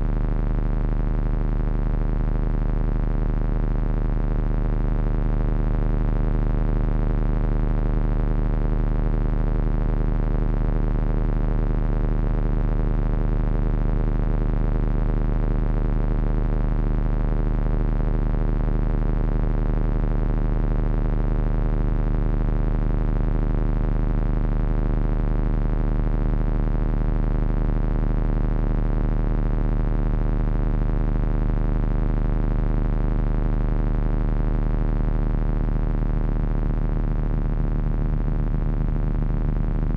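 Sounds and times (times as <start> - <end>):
strong low hum: 0.0 - 1.4, 33.8 - 39.9.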